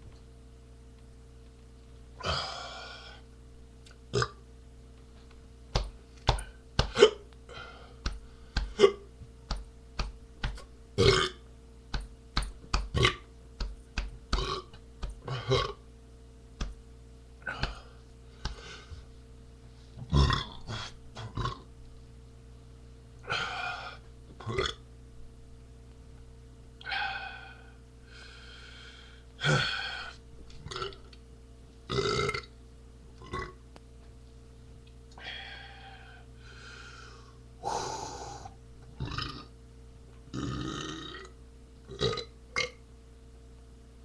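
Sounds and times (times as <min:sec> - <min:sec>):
man burping: 0:02.2 - 0:03.2, 0:04.1 - 0:04.4, 0:06.8 - 0:07.8, 0:08.6 - 0:09.1, 0:11.0 - 0:11.4, 0:12.9 - 0:13.3, 0:14.3 - 0:15.8, 0:17.4 - 0:17.9, 0:20.1 - 0:21.7, 0:23.2 - 0:24.8, 0:29.4 - 0:30.1, 0:30.7 - 0:31.0, 0:31.9 - 0:32.5, 0:33.2 - 0:33.6, 0:39.0 - 0:39.5, 0:40.3 - 0:42.8.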